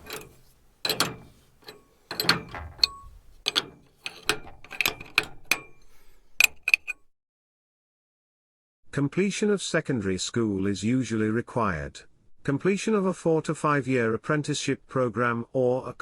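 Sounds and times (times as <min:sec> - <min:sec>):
metallic clanks and clicks: 0:00.0 - 0:07.1.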